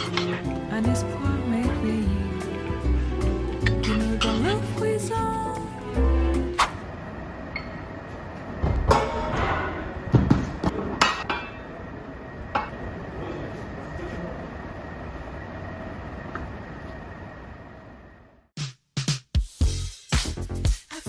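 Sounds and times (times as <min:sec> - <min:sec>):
dishes and cutlery clinking: 0:00.0 - 0:00.5, 0:03.6 - 0:04.6
steady background hum: 0:00.0 - 0:18.5.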